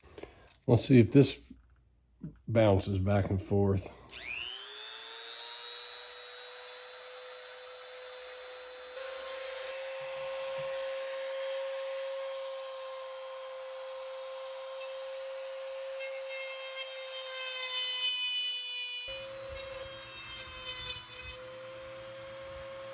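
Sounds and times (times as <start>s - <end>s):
rotary tool high whine: 4.1s - 17.8s, 18.7s - 22.9s.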